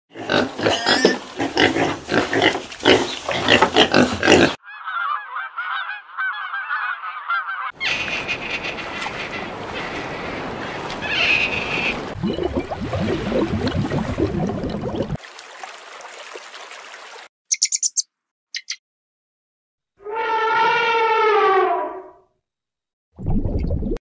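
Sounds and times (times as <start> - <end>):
geese honking: 4.6 - 12.2
high chirping calls: 17.5 - 18.8.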